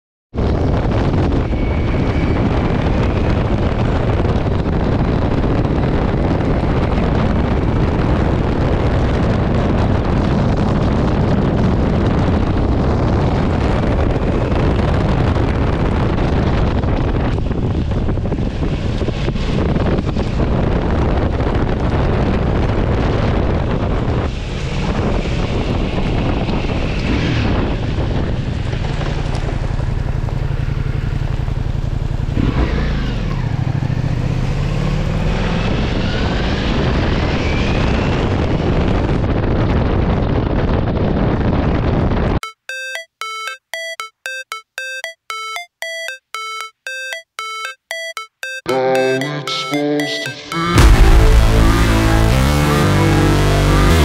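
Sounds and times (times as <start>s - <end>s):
wind rushing over microphone: 0.4s - 29.6s, 35.1s - 42.4s.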